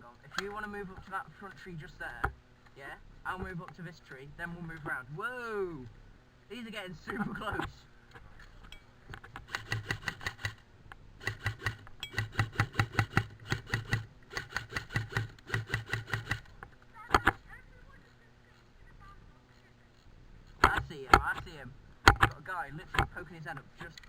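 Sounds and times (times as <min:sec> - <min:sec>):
airsoft rifle rapid fire: 0:09.4 - 0:10.6, 0:11.2 - 0:16.5.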